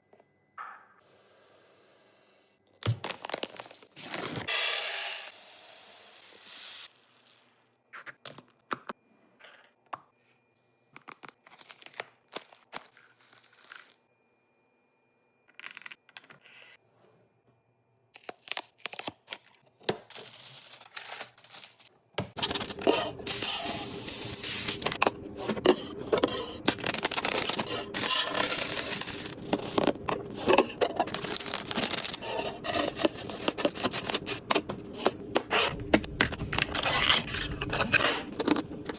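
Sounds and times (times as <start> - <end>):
packaging rustling: 18.8 - 38.9
packaging clicks and knocks: 24.7 - 38.9.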